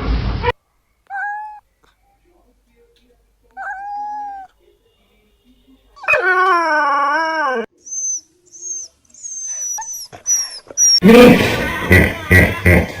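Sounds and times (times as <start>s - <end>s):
dog howling: 3.6s - 4.5s, 6.0s - 7.7s.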